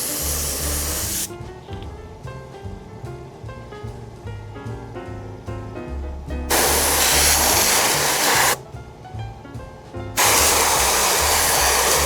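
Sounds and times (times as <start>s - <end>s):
spray adhesive hissing: 0.0s - 1.3s, 6.5s - 8.6s, 10.2s - 12.0s
background music with bass line: 0.0s - 12.0s.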